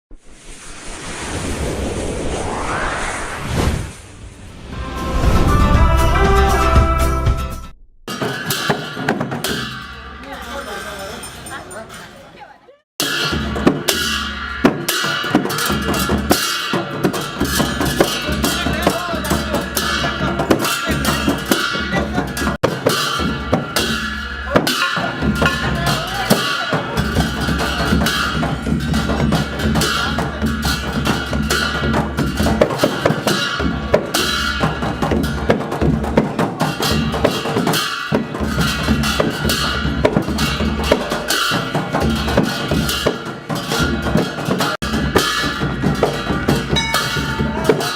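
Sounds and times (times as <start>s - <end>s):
barrel drums beaten fast: 8.1s - 10.2s, 13.0s - 47.9s
cymbals ringing: 13.0s - 35.4s, 36.7s - 47.9s.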